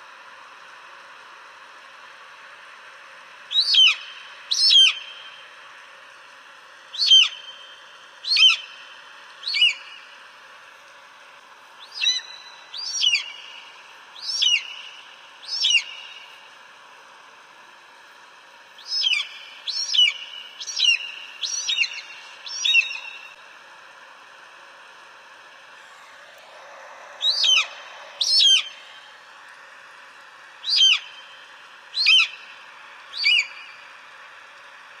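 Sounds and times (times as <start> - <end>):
steady hiss: 0.0 - 35.0
eagle calling: 3.5 - 5.3, 6.9 - 8.8, 9.4 - 10.1, 11.8 - 16.3, 18.8 - 23.4, 26.5 - 29.1, 30.6 - 31.3, 32.0 - 32.5, 33.1 - 33.7
eagle screeching: 27.0 - 28.9.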